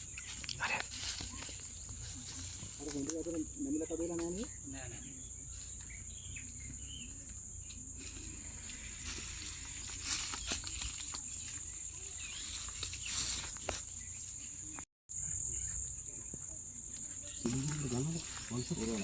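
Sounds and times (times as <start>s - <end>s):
rustling and crackling: 0.0s - 14.9s
high-pitched insect drone: 0.0s - 19.0s.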